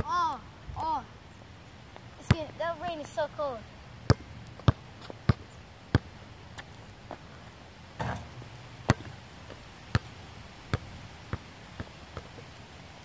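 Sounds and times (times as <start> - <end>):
basketball bouncing: 4.1 - 6.1, 8.0 - 9.2.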